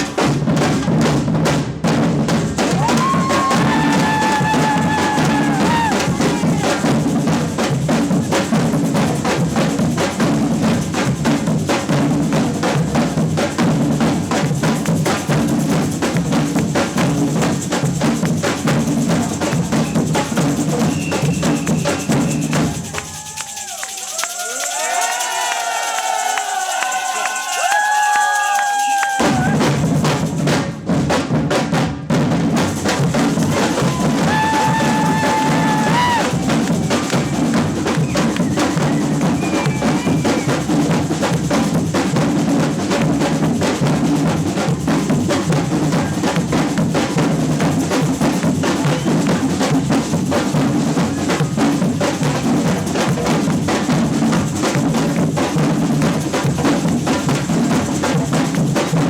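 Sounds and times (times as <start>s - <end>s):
samba percussion band drumming: 0.0s - 59.0s
crowd noise: 2.6s - 7.2s, 20.9s - 29.8s, 33.0s - 40.7s.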